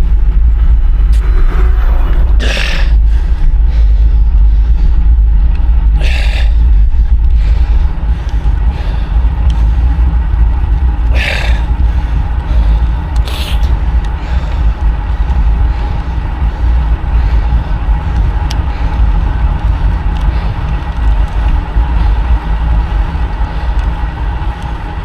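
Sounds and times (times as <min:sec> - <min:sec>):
wind rumble on microphone: 0:00.0 - 0:25.0
person breathing heavily: 0:00.3 - 0:25.0
hard puffs of breath: 0:05.9 - 0:10.0, 0:11.1 - 0:19.5.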